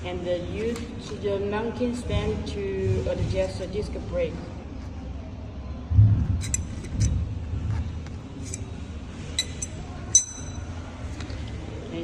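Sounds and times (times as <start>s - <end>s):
light metal clinks: 9.4s - 10.7s.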